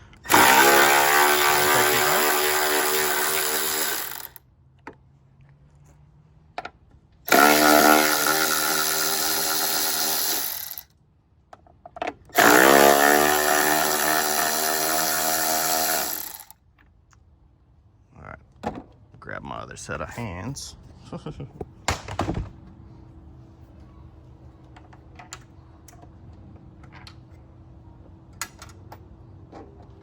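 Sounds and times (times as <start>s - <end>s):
power drill motor whining: 0.2s - 4.4s, 7.3s - 10.8s, 12.4s - 16.5s.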